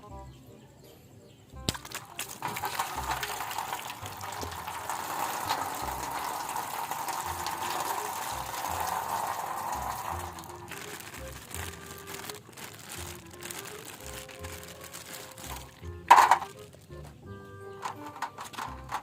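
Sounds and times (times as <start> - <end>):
tap water running: 1.7 - 16.6.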